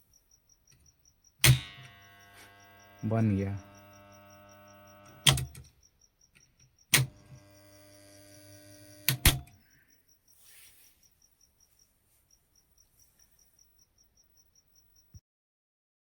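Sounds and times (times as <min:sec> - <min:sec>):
panel board switch clicking: 0:01.4 - 0:01.8, 0:05.1 - 0:05.6, 0:07.0 - 0:07.2, 0:09.0 - 0:09.5
steady mains hum: 0:01.6 - 0:05.4, 0:07.0 - 0:09.2.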